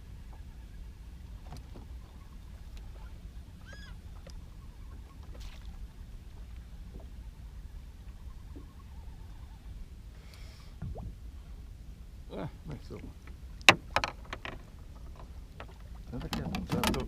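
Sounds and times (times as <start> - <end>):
water and wind rumbling: 0.0 - 17.0
short squeak: 3.6 - 4.0.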